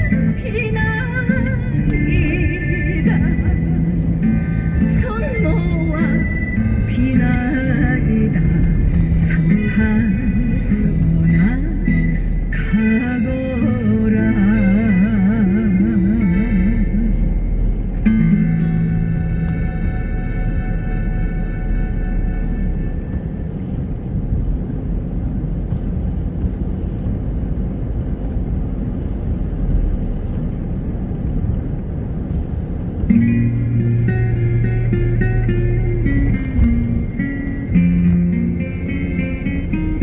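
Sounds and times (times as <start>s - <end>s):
music: 0.0s - 24.8s, 32.3s - 40.0s
car road and engine rumble: 0.0s - 40.0s.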